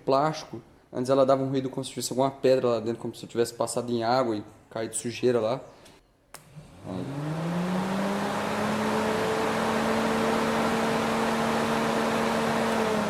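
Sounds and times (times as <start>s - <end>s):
cooling fan motor hum: 6.4s - 13.0s.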